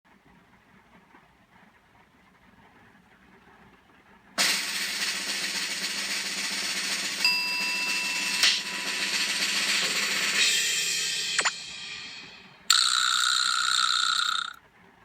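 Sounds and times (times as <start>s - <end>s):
short sharp hit: 4.4s - 12.7s
snare drum roll: 4.4s - 14.5s.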